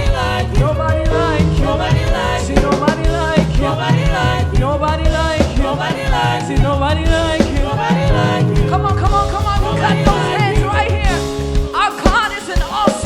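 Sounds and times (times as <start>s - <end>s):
drum kit beat: 0.0s - 13.0s
gospel band playing: 0.0s - 13.0s
people singing: 0.0s - 13.0s.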